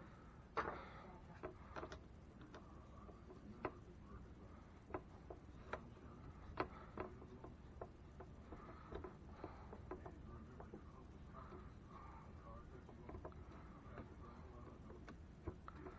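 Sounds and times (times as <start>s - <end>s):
light clicks and taps of tools: 1.4s - 3.9s, 4.8s - 11.7s.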